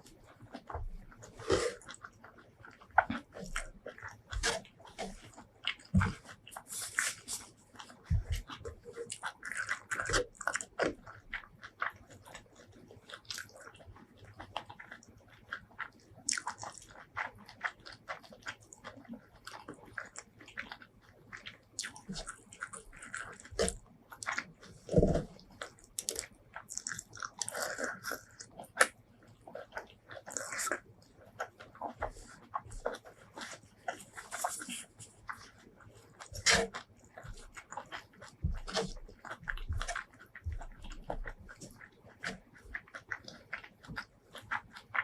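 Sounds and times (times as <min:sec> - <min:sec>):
wet chewing and lip smacking: 0:00.0 - 0:45.0.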